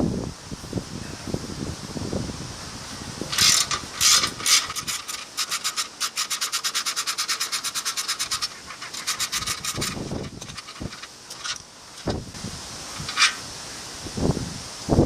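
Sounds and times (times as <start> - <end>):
rapid scraping strokes: 3.3 - 13.5.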